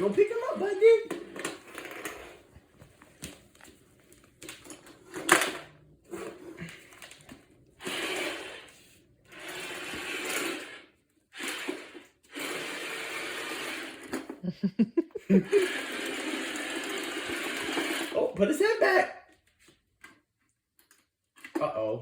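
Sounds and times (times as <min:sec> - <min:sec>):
small electric motors whirring: 0:07.8 - 0:14.4, 0:15.5 - 0:18.2.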